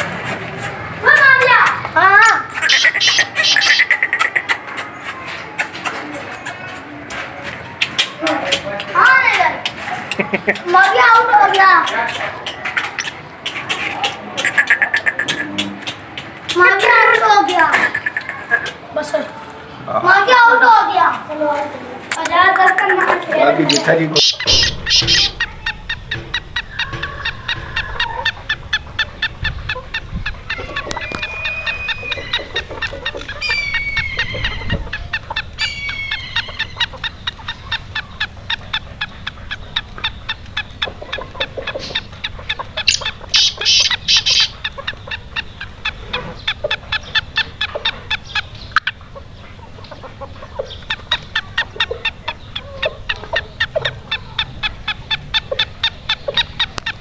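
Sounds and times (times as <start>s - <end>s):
bird harsh clicking calls: 0.0s - 19.2s, 22.1s - 57.0s
bird gliding whistles: 2.6s - 3.9s, 30.5s - 32.7s, 33.3s - 34.8s, 35.6s - 36.9s.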